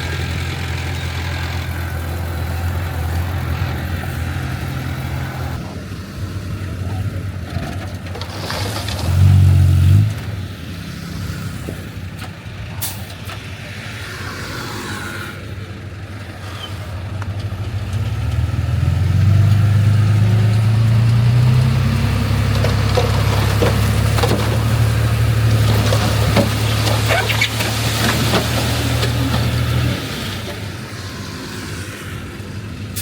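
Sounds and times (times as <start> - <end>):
heavy diesel engine revving: 0.0 - 6.7, 16.4 - 33.0
knocks and clanks: 22.3 - 29.9.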